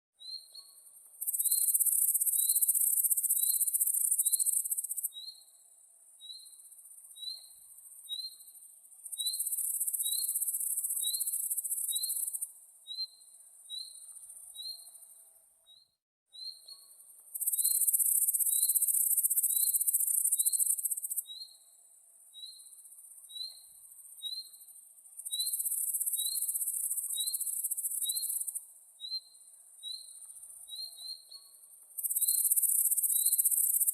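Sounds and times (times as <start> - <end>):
insects buzzing: 31.9 - 33.9.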